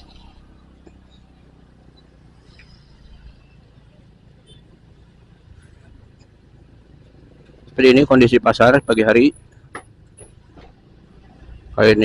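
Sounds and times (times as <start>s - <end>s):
motorcycle engine running: 0.0s - 12.0s
road noise: 0.0s - 12.0s.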